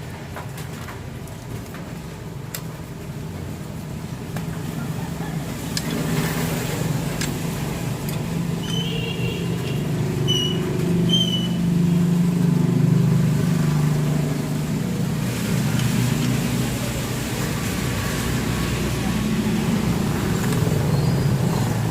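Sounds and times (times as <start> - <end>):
low engine hum: 3.2 - 21.9
short high squeaks: 8.6 - 9.3, 10.2 - 11.7.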